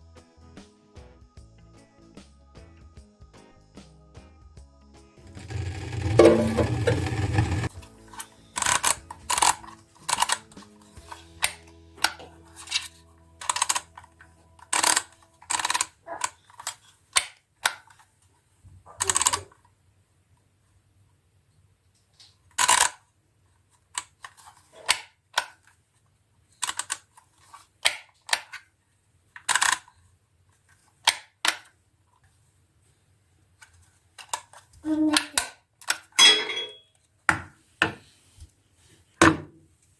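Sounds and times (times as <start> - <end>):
household items clicking and knocking: 5.2 - 7.8.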